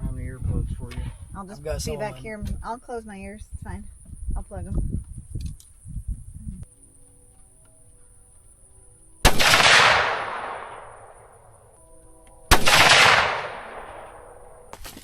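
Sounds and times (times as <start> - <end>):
rifle shots with echo: 9.2 - 11.4, 12.5 - 14.8.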